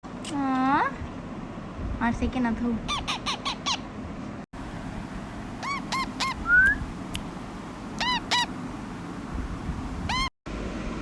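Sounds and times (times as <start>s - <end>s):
parrot calling: 2.9s - 3.9s, 5.6s - 6.8s, 8.0s - 8.6s, 10.1s - 10.3s
parrot rising whistle: 5.6s - 6.9s.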